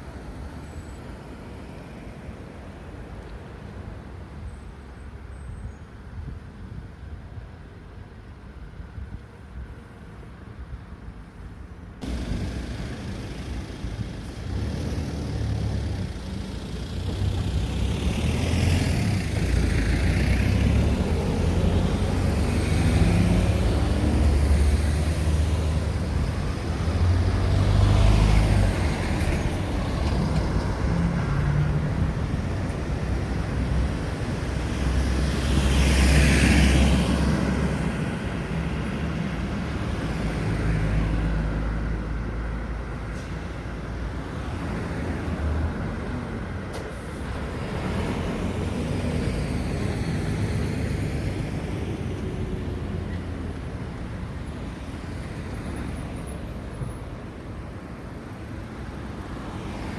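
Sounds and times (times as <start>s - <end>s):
vehicles driving past: 12.0s - 59.9s.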